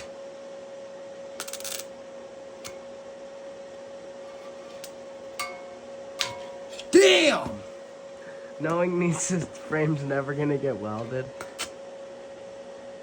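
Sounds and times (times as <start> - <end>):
steady high hum: 0.0 - 13.0
welding arc crackling: 1.4 - 2.0.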